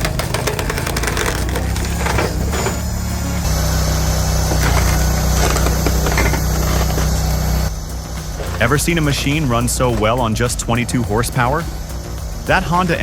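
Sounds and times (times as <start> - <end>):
wood cracking and snapping: 0.0 - 2.9
wood chipper engine hum: 0.0 - 13.0.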